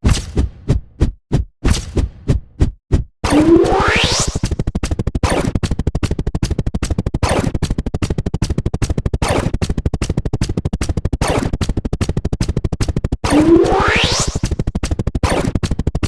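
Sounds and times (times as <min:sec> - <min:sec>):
electronic blips: 0:03.2 - 0:04.6, 0:13.2 - 0:14.6
rising electronic swoop: 0:03.2 - 0:04.6, 0:13.2 - 0:14.6.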